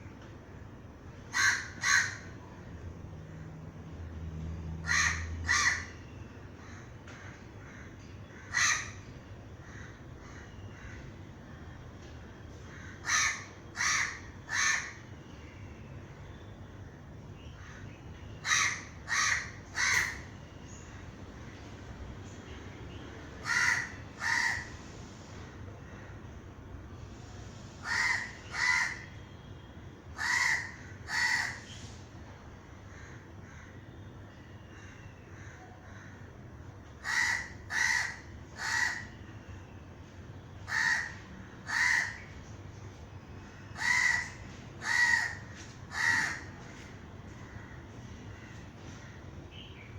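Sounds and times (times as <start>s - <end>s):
crow cawing: 1.3s - 2.4s, 4.8s - 6.0s, 6.6s - 11.1s, 12.6s - 15.0s, 17.6s - 20.3s, 23.4s - 24.8s, 27.8s - 29.2s, 30.2s - 31.7s, 32.9s - 33.9s, 34.7s - 36.4s, 37.0s - 39.3s, 40.6s - 42.3s, 43.7s - 46.6s.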